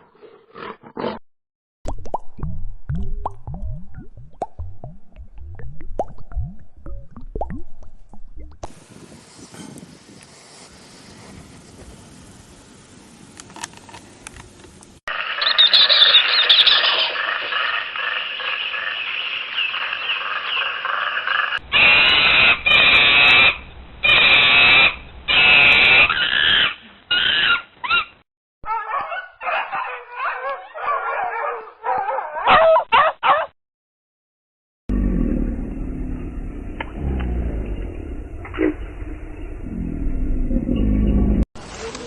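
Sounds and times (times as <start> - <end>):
warbling animal calls: 15.1 - 28.1
pulsing animal chorus: 15.2 - 21.6
loud animal calls: 15.2 - 28.1.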